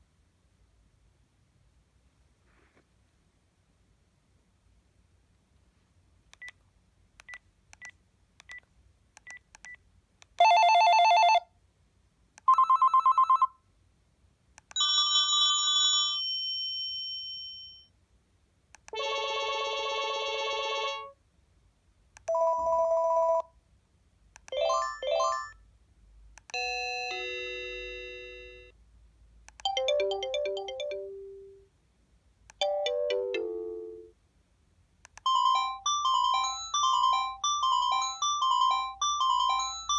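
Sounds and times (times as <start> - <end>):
electronic phone ringtones: 12.5 - 13.5, 24.5 - 25.6, 26.6 - 28.7, 35.3 - 39.9.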